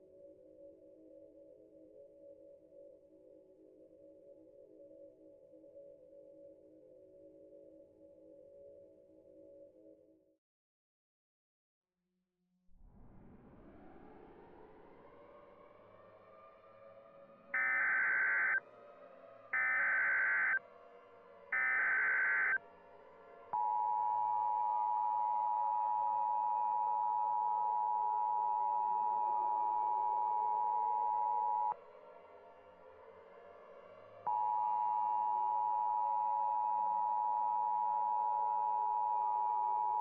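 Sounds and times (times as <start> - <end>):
screeching data tones: 17.6 - 18.6, 19.6 - 20.6, 21.6 - 22.6
two-tone attention signal: 17.6 - 18.6, 19.6 - 20.6, 21.6 - 22.6.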